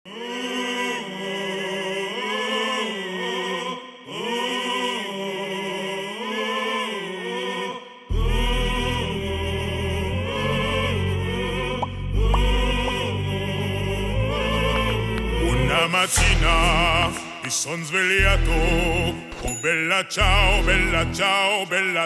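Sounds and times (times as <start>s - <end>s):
deep bass: 8.1s - 17.2s, 18.2s - 19.2s.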